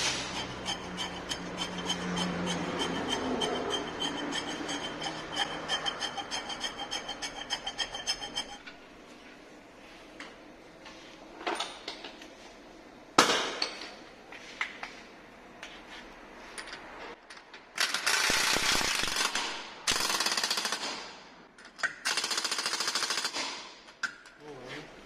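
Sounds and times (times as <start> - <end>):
impact wrench rattling: 0.0 - 8.8.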